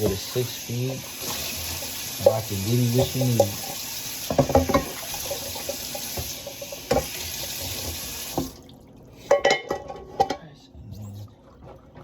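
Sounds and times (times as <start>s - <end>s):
tap running into a sink: 0.0s - 0.4s, 1.1s - 8.6s
dishes clattering: 1.6s - 8.5s, 9.3s - 10.5s
dishes knocking: 4.3s - 8.5s, 9.3s - 10.4s.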